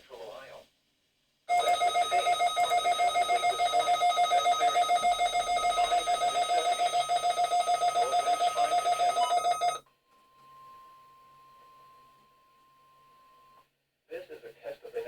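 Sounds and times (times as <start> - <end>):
weather radio alarm beeping: 1.5 - 9.8
faint steady tone: 1.5 - 13.7.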